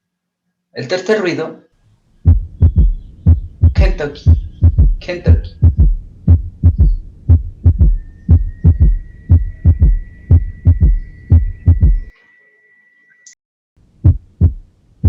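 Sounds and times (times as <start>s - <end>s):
heart sounds with gallop rhythm: 2.2s - 12.1s, 14.0s - 14.6s.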